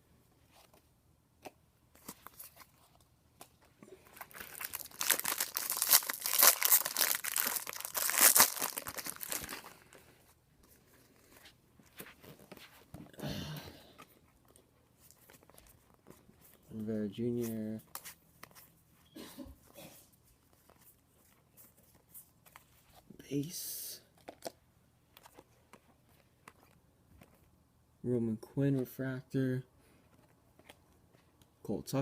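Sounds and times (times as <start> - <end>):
wrapper crinkling: 3.9 - 10.0.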